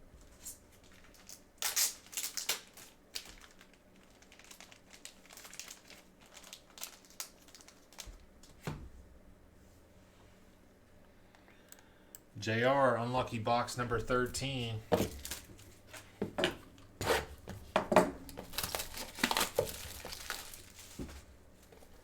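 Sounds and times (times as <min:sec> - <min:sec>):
plastic wrapping crinkling: 0:00.4 - 0:08.7, 0:14.9 - 0:16.2, 0:18.2 - 0:22.0.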